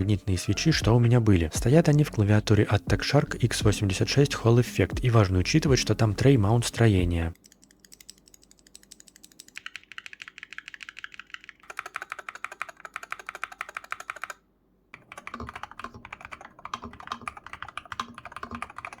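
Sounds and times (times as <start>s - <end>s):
keyboard typing clicks: 7.4s - 14.4s, 15.0s - 19.0s.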